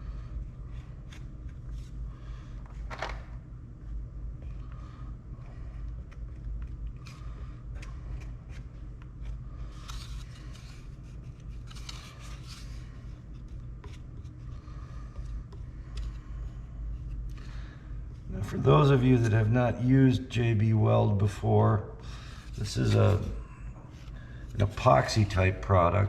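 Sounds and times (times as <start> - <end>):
steady low hum: 0.0 - 26.0.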